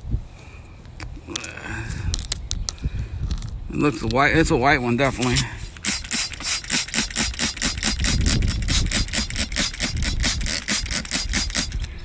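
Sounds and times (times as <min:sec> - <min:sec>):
spray bottle squirting: 0:05.0 - 0:11.9.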